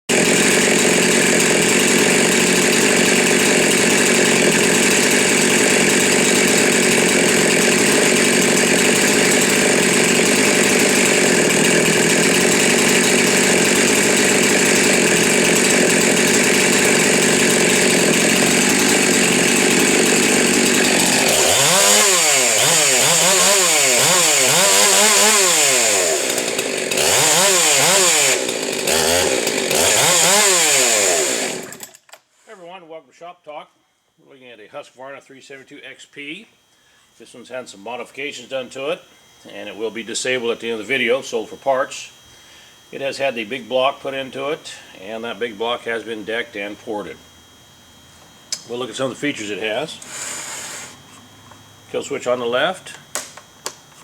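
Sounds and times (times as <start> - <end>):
chainsaw revving: 0.1 - 32.1, 48.6 - 51.0.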